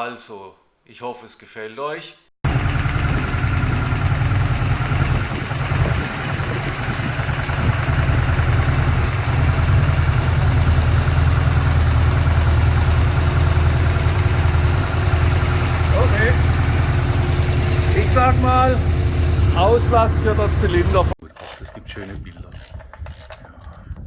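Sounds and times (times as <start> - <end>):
car engine idling: 2.4 - 21.2
fast even engine ticking: 2.4 - 23.3.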